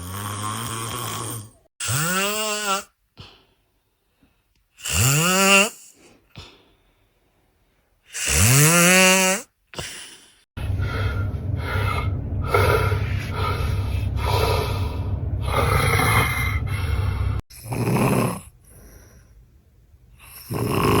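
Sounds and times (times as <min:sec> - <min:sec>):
person snoring heavily: 0:00.0 - 0:02.9, 0:04.8 - 0:06.0, 0:08.1 - 0:19.1, 0:20.2 - 0:21.0
steady low drone: 0:10.6 - 0:17.4.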